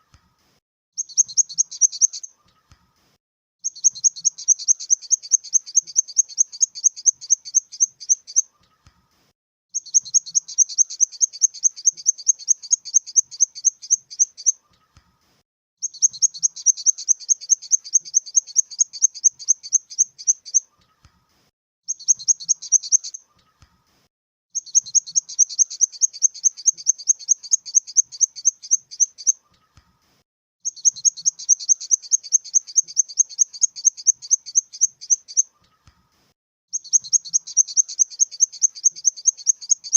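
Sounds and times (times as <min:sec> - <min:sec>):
grasshopper chirping: 0:03.6 - 0:08.4, 0:09.8 - 0:14.5, 0:15.8 - 0:20.6, 0:21.9 - 0:23.2, 0:24.6 - 0:29.3, 0:30.7 - 0:35.4, 0:36.8 - 0:39.9.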